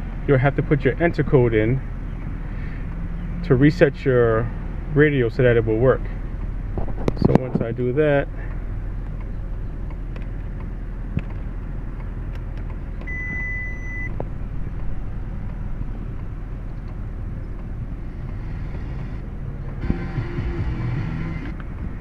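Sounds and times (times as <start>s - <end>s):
low car cabin hum: 0.0s - 22.0s
electronic beep: 13.1s - 14.1s.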